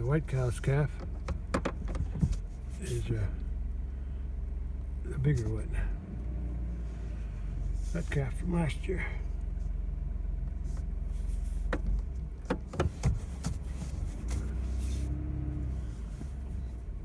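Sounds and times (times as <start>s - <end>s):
vehicle engine rumbling: 0.0s - 17.0s
vehicle rattling knocks: 0.9s - 2.5s, 11.7s - 14.0s.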